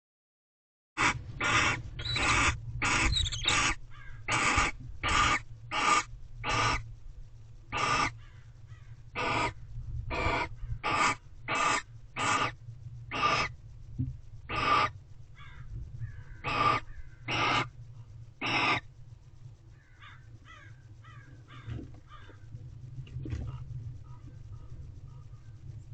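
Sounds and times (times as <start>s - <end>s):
owls hissing calls: 1.0s - 6.8s, 7.7s - 13.6s, 14.5s - 17.7s, 18.4s - 18.9s
low electrical hum: 1.0s - 25.9s.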